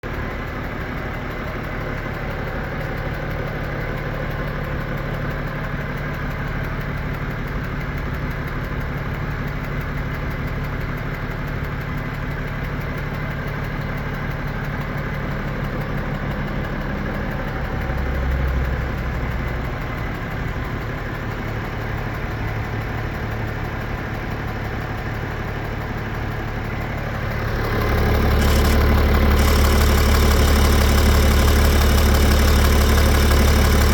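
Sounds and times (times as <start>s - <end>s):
diesel engine idling with knock: 0.0s - 33.9s.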